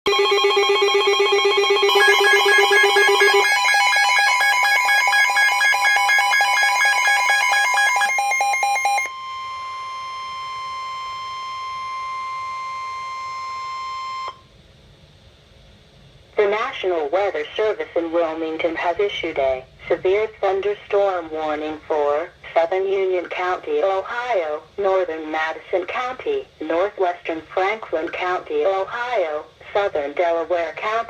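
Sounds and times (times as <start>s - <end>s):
trilling electronic alarm: 0.1s - 14.4s
steady alarm tone: 0.1s - 14.5s.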